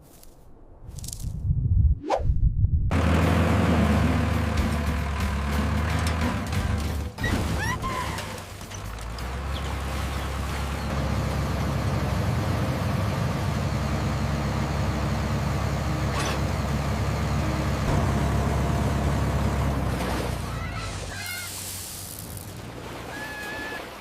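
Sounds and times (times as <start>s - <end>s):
tractor engine rumbling: 2.9s - 24.0s.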